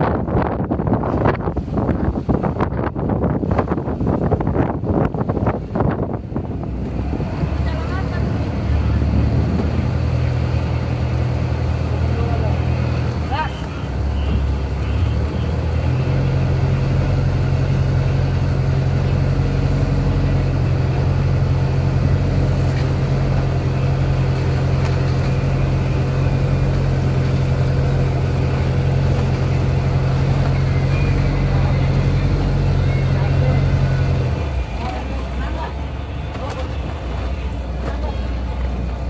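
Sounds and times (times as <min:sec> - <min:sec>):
large engine idling: 0:04.6 - 0:39.0.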